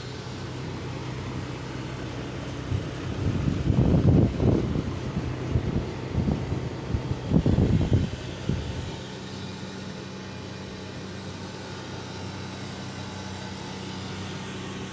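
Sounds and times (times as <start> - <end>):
low machine hum: 0.0 - 14.9
wind buffeting microphone: 2.6 - 9.0.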